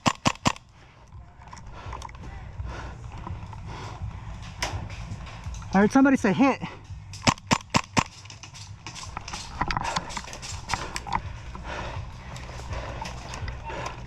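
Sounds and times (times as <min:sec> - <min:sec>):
sharp snaps: 0:00.0 - 0:00.6, 0:07.1 - 0:11.1.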